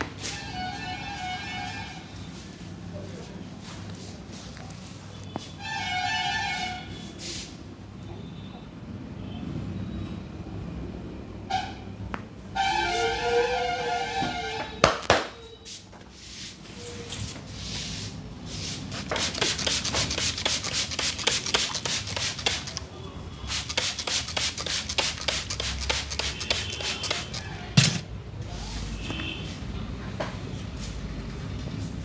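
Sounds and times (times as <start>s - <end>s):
hands rubbing skin and hair: 17.6s - 22.9s, 23.5s - 27.5s.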